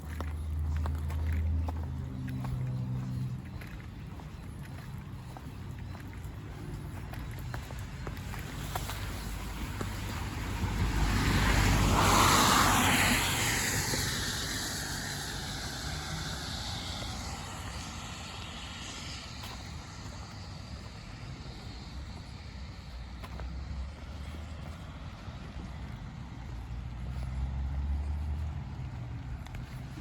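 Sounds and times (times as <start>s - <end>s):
car tyres hissing on wet road: 8.4s - 24.0s.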